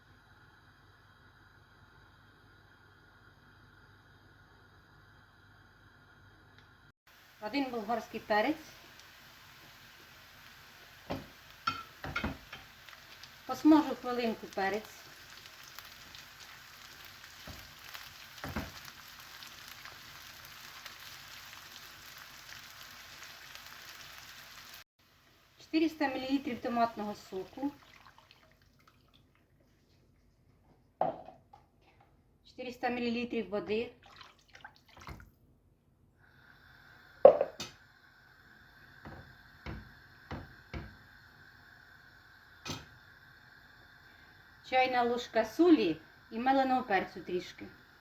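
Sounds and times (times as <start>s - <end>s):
vegetables sizzling in a frying pan: 7.1s - 27.8s, 36.4s - 48.0s.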